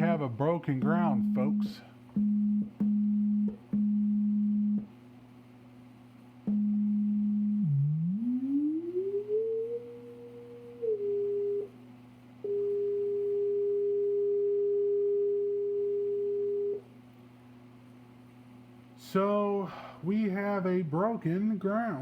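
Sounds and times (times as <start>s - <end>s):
faint steady hum: 0.0s - 22.0s
sine-wave test tone: 0.9s - 4.9s, 6.4s - 16.9s.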